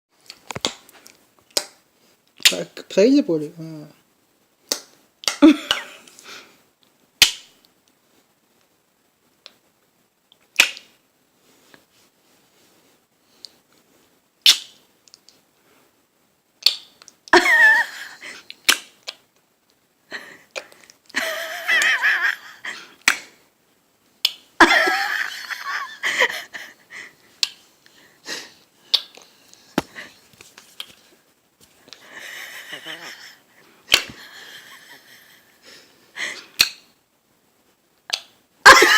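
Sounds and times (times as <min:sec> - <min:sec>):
mouth clicks and smacks: 0:00.2 - 0:02.6, 0:04.7 - 0:06.2, 0:10.3 - 0:10.9, 0:14.4 - 0:15.4, 0:16.6 - 0:17.3, 0:18.5 - 0:19.4, 0:24.2 - 0:24.5, 0:27.4 - 0:27.6, 0:28.8 - 0:31.0, 0:36.5 - 0:36.8, 0:38.0 - 0:38.4.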